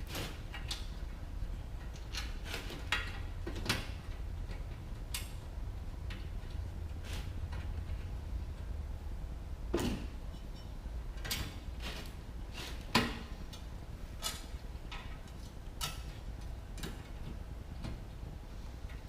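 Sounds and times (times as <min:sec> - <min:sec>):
wire clicking on metal springs: 0:11.2 - 0:17.2.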